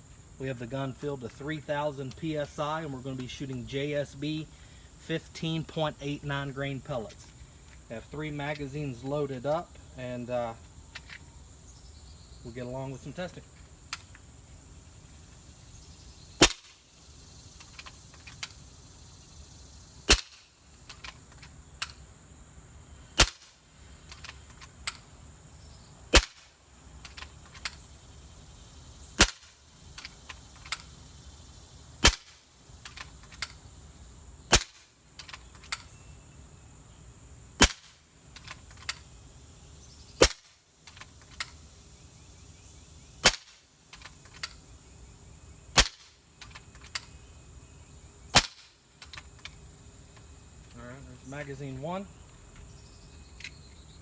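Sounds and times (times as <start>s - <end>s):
air rifle shots: 16.4s - 16.8s, 20.1s - 21.1s, 23.2s - 25.0s, 26.1s - 27.8s, 29.2s - 29.6s, 32.0s - 33.4s, 34.5s - 35.0s, 37.6s - 38.0s, 40.2s - 40.6s, 43.2s - 44.4s, 45.7s - 46.6s, 48.3s - 48.8s.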